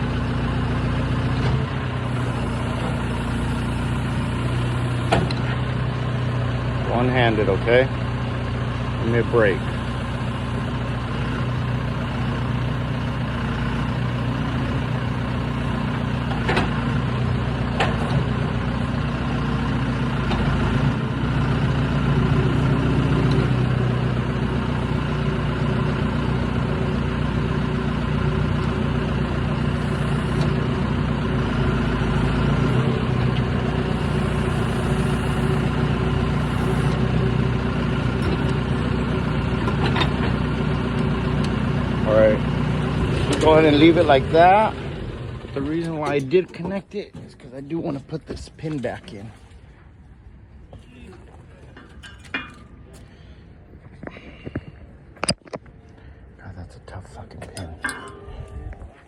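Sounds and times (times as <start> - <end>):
diesel engine idling: 0.0 - 55.2.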